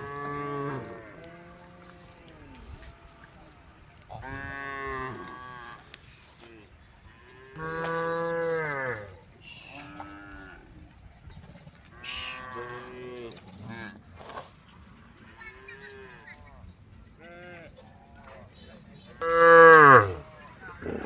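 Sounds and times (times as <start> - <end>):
cows mooing: 0.0 - 2.1, 7.2 - 10.7, 19.2 - 21.0.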